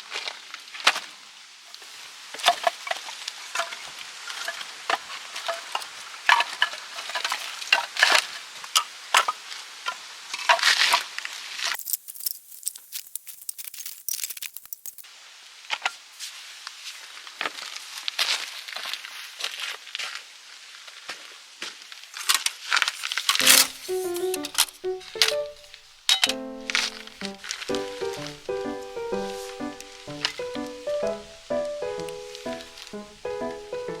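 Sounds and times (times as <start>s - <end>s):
small objects clicking and clinking: 11.7s - 15.1s, 23.1s - 28.5s, 29.8s - 30.8s
high hiss: 23.4s - 34.0s.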